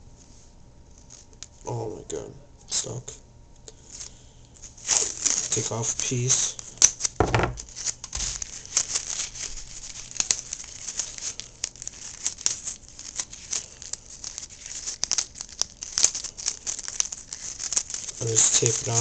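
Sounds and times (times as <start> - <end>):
paper crinkling: 0.2 - 1.7, 3.8 - 19.0
tape peeled and torn: 4.7 - 19.0.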